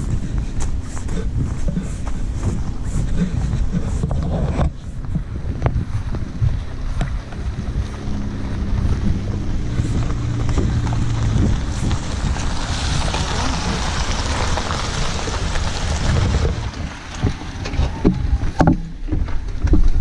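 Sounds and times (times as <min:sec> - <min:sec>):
low steady hum: 0:00.0 - 0:20.0
wind rumbling on microphone: 0:00.0 - 0:20.0
hissing rush: 0:05.8 - 0:18.6.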